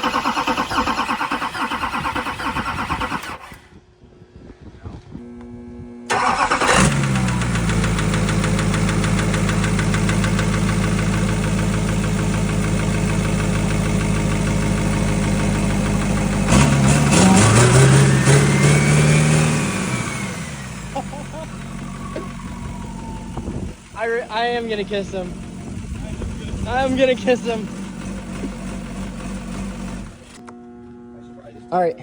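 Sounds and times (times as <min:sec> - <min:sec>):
diesel engine clatter: 0:06.1 - 0:30.4
turbo whine: 0:13.6 - 0:31.2.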